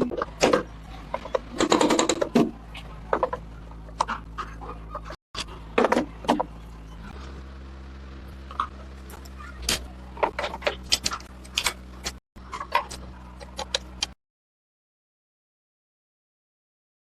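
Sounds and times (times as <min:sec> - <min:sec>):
steady low hum: 0:00.0 - 0:14.2.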